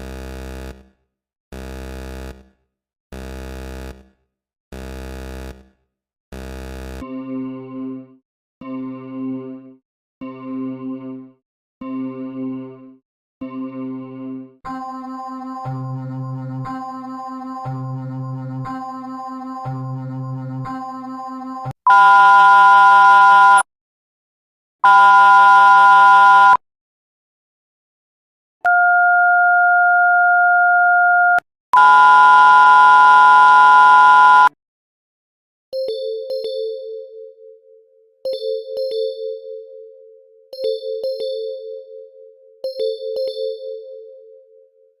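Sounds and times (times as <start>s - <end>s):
harsh buzzer alarm blasts: 1.6s - 2.4s, 6.4s - 7.0s.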